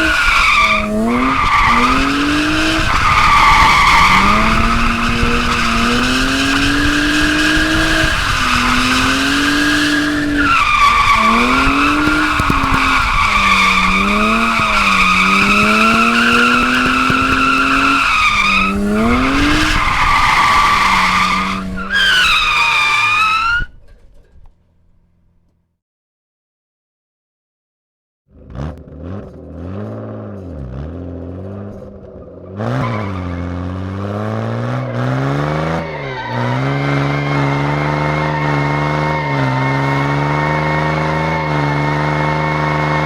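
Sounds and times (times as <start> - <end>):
tyre squealing: 0.0 - 24.1, 34.8 - 43.0
car engine revving: 0.0 - 24.2, 28.4 - 43.0.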